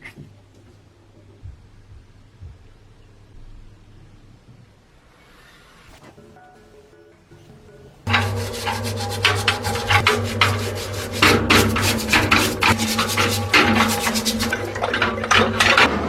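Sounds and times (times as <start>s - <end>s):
steady low hum: 0.0s - 6.6s, 7.3s - 16.0s
rough scraping strokes: 8.1s - 15.9s.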